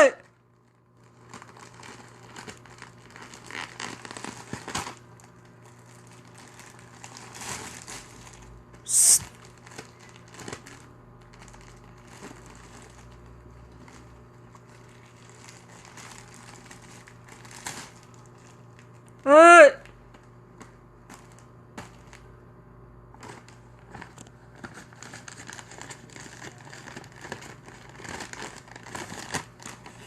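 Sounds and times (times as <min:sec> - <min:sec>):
rustling and crinkling: 0:00.2 - 0:19.2, 0:20.0 - 0:22.4, 0:23.0 - 0:30.0
sharp hissing burst: 0:08.9 - 0:09.2.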